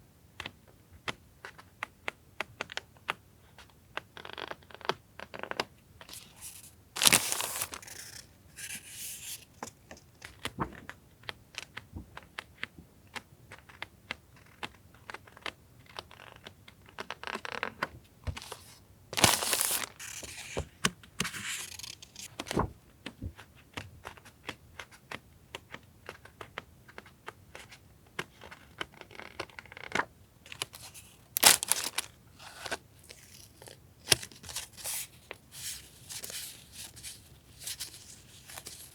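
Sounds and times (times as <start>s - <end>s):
paper and plastic rustling: 6.1s - 11.0s, 18.3s - 22.8s, 30.5s - 38.9s.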